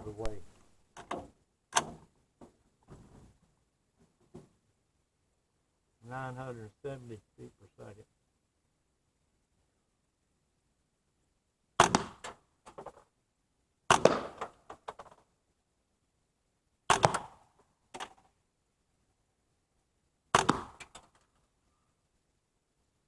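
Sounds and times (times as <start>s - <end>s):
rifle shots: 11.8s - 12.3s, 13.9s - 14.6s, 16.9s - 17.4s.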